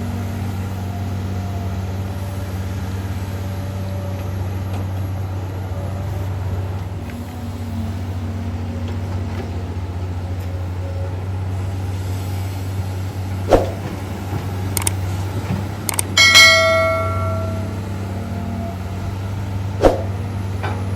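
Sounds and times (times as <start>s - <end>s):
excavator diesel engine running: 0.0s - 20.9s
loud ringing metallic clang: 16.1s - 18.2s
sharp knock: 19.8s - 20.2s.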